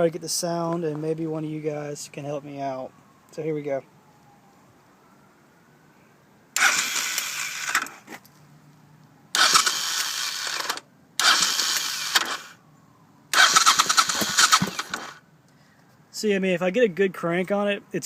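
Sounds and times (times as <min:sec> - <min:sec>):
motorcycle starter whirring: 0:06.6 - 0:08.1, 0:09.3 - 0:12.6, 0:13.3 - 0:15.2.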